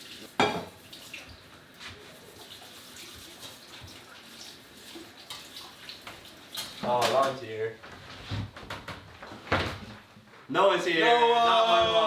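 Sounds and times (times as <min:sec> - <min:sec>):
water running from a tap: 0:00.0 - 0:07.5.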